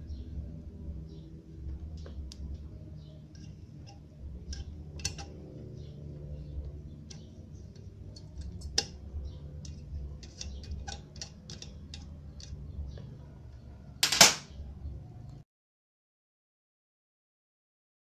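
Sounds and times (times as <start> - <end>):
steady low hum: 0.0 - 15.4
small hand tools clicking and tapping: 3.4 - 5.4, 7.1 - 12.6.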